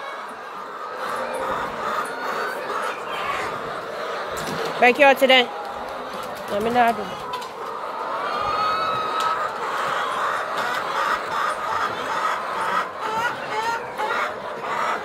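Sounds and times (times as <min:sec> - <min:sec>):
hens clucking: 0:00.0 - 0:15.0.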